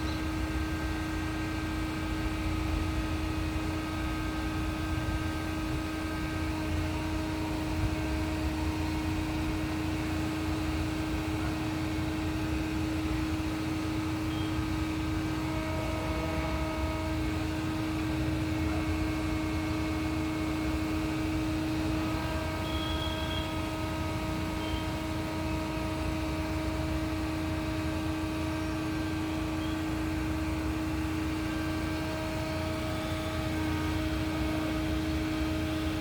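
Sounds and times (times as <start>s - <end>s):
concrete pump engine rumble: 0.0s - 36.0s
faint whining tones: 18.6s - 36.0s.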